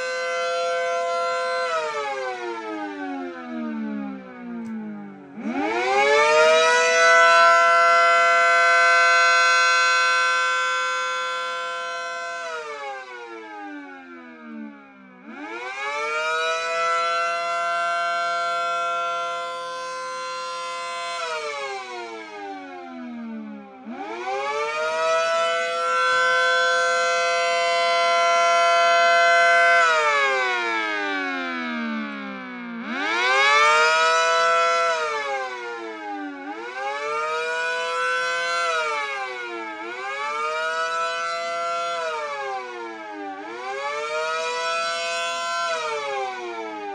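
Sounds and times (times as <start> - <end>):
siren winding up and down: 0.0 - 46.9
rotating siren chord: 23.6 - 35.1.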